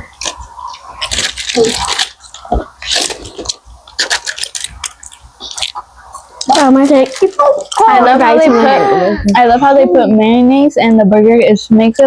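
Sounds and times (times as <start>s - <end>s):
person chewing crunchy food: 0.0s - 6.6s.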